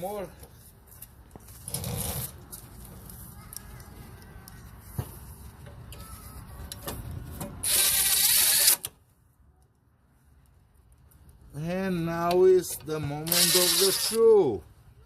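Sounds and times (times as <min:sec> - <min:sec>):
power tool driving bolt: 0:07.6 - 0:08.9.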